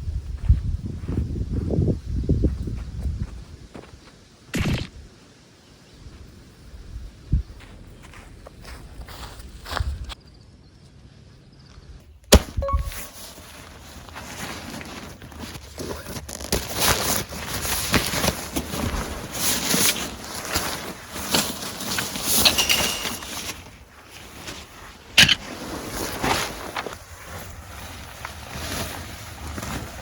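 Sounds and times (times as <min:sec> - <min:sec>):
camping gear rustling and knocking: 0:12.8 - 0:30.0
sharp click: 0:25.2 - 0:25.4.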